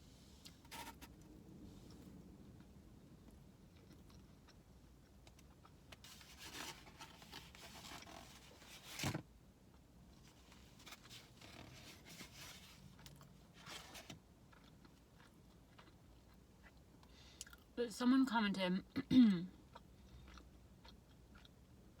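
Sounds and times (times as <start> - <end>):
food packaging rustling: 5.9 - 9.2, 10.2 - 14.2.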